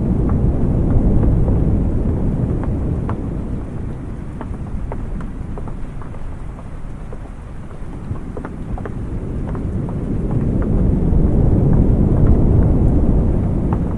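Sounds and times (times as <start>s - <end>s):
raindrops ticking on wood: 0.0s - 13.9s.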